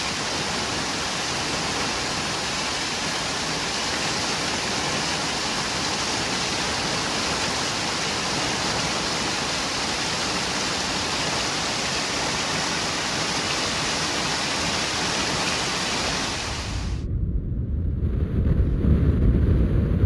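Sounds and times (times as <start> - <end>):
wind buffeting microphone: 14.0 - 20.0
loud rushing noise: 15.6 - 20.0.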